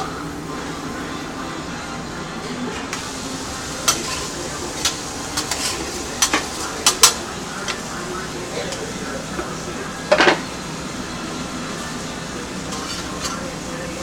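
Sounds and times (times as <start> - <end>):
burger sizzling on grill: 0.0 - 14.0
kitchen utensils clinking: 3.6 - 10.6, 12.3 - 14.0.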